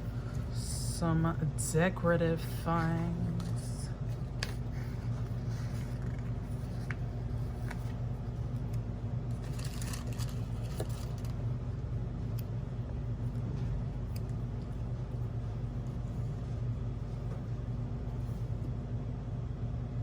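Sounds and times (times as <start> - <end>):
low background hum: 0.0 - 20.0
paper scraping and rustling: 3.4 - 8.0.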